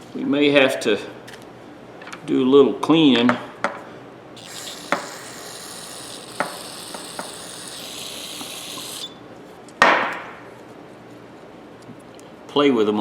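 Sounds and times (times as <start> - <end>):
aerosol spray hissing: 4.4 - 9.2.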